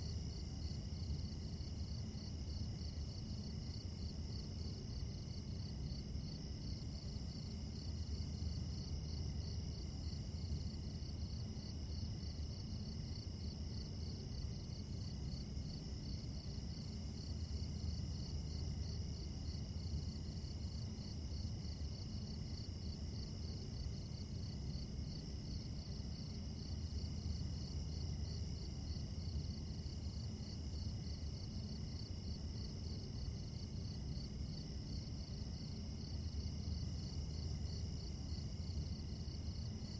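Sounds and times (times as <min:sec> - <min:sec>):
crickets chirping: 0:00.0 - 0:39.9.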